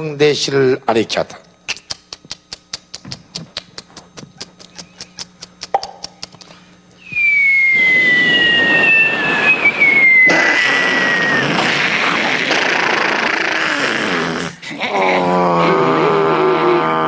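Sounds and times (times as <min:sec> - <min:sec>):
mouth clock ticking: 0:01.7 - 0:06.4
vocal incoming shell whistle: 0:07.0 - 0:11.6.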